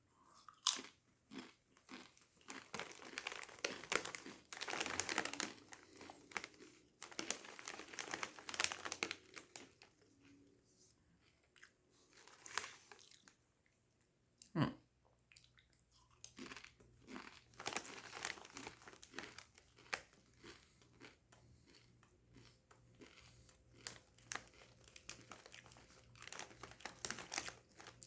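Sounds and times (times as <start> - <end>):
chips crunching as chewed: 0.3 - 10.4, 16.1 - 28.0
chip bag crinkling: 0.5 - 10.0, 12.1 - 13.4, 16.4 - 21.1, 21.7 - 28.0.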